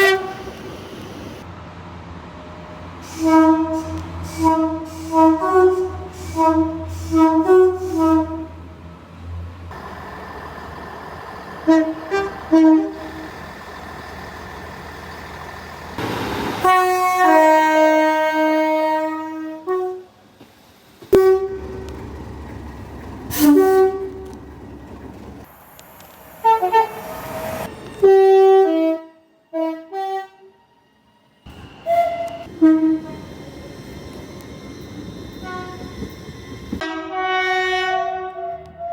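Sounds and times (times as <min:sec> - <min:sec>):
train horn toots: 0:00.0 - 0:00.6, 0:03.0 - 0:08.6, 0:11.6 - 0:13.3, 0:16.6 - 0:20.2, 0:21.1 - 0:22.1, 0:23.3 - 0:24.4, 0:26.4 - 0:30.7, 0:31.8 - 0:33.2, 0:35.4 - 0:36.2, 0:36.8 - 0:38.9
low engine rumble: 0:07.4 - 0:17.4, 0:21.2 - 0:28.0.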